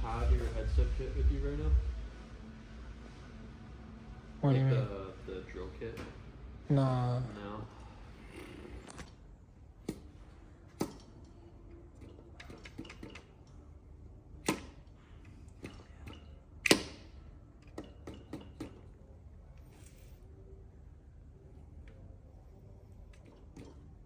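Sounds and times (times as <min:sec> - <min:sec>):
tools and metal parts clicking: 0:10.8 - 0:13.6.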